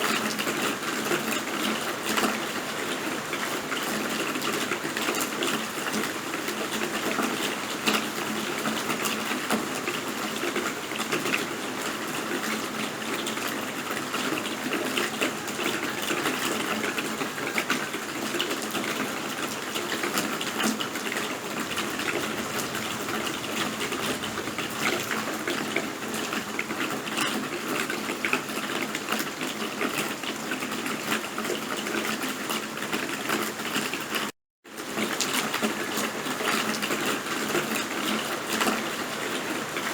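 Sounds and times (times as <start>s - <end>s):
rain drops pattering: 0.0s - 39.9s.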